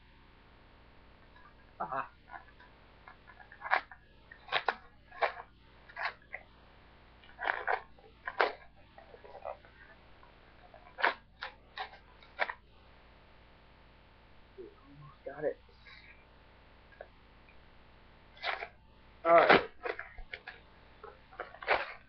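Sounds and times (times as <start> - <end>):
package tearing and crinkling: 18.4 - 18.7, 19.3 - 20.6, 21.4 - 22.0.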